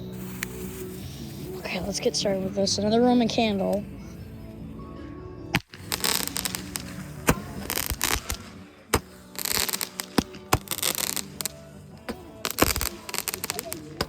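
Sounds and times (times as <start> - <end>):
roman candle pops: 5.5 - 14.0
fizzing crackle: 5.6 - 11.7.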